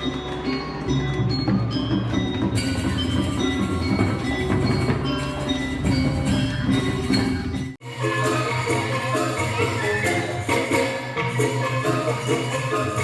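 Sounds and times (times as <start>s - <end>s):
instrumental pop music: 7.8s - 13.0s.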